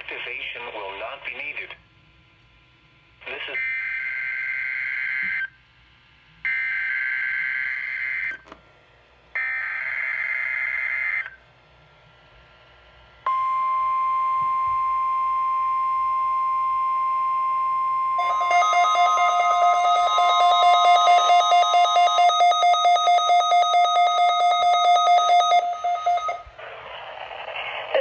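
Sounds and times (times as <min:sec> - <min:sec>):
pulsing pair of tones: 0:13.3 - 0:26.6
steady warning alarm tone: 0:13.3 - 0:26.7
warbling data tones: 0:18.2 - 0:28.0.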